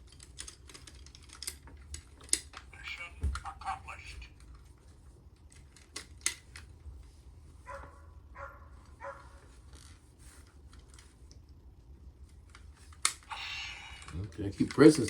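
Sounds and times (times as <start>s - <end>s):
plastic parts clicking: 0.0s - 2.7s, 5.4s - 6.7s.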